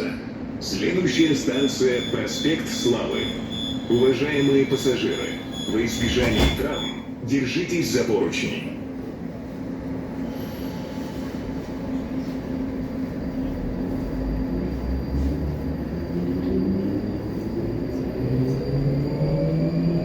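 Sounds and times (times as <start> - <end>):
train wheels rumbling on rail: 3.0 - 6.9
electric traction drive whine: 13.1 - 20.0.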